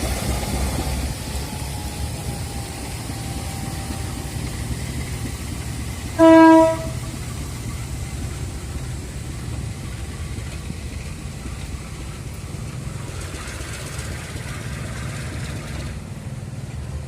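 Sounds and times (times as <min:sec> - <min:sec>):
locomotive air horn blast: 0:06.2 - 0:07.2.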